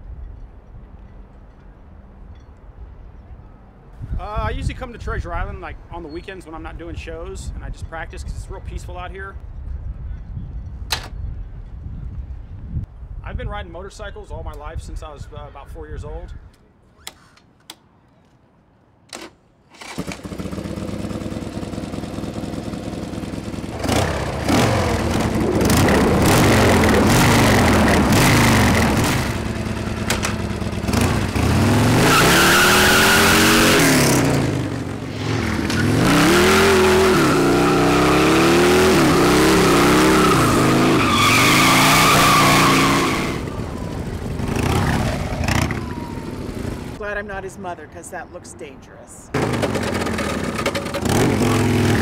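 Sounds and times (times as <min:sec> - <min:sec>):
motorcycle engine revving: 0:19.8 - 0:47.0, 0:49.4 - 0:52.0
loud tire squeal: 0:31.8 - 0:33.9, 0:35.7 - 0:43.6.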